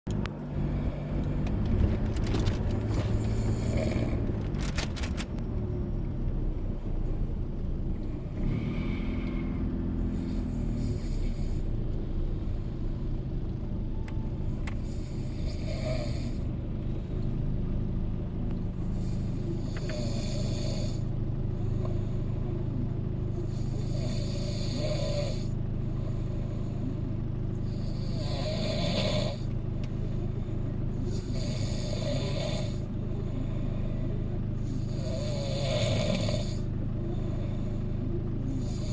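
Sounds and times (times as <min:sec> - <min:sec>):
low hum inside a car: 0:00.1 - 0:38.9
person snoring loudly: 0:03.4 - 0:04.4, 0:15.0 - 0:16.4, 0:23.5 - 0:25.5, 0:27.8 - 0:29.5, 0:31.2 - 0:32.8, 0:34.8 - 0:36.6.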